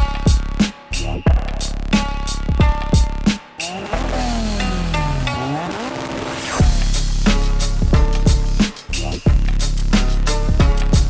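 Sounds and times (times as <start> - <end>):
deep kick drums: 0.0 - 0.6, 1.3 - 1.7, 2.4 - 3.3, 6.6 - 8.7, 9.3 - 11.0.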